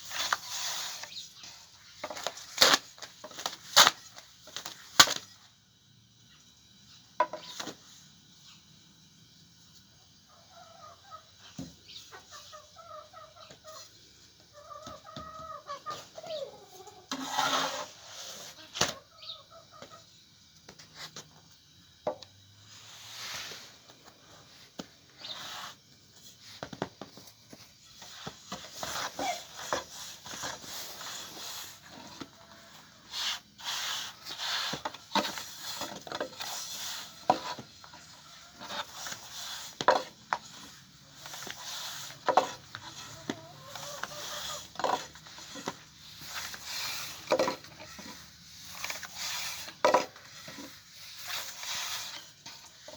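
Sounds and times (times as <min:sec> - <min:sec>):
chickens clucking: 0:10.3 - 0:17.3, 0:18.4 - 0:20.2, 0:37.0 - 0:48.8
scraping noises: 0:17.1 - 0:18.7, 0:27.5 - 0:52.9.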